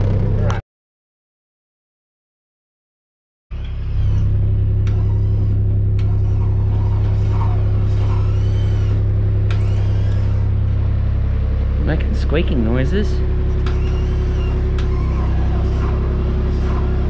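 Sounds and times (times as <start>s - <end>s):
engine humming: 0.0s - 0.6s, 3.5s - 17.0s
short high squeaks: 3.5s - 10.6s, 13.5s - 17.0s.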